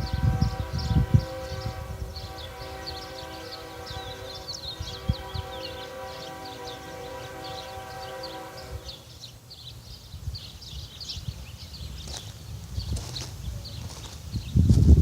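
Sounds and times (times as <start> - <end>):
locomotive air horn chord: 0.0 - 9.2
low rumble of passing train: 0.0 - 15.0.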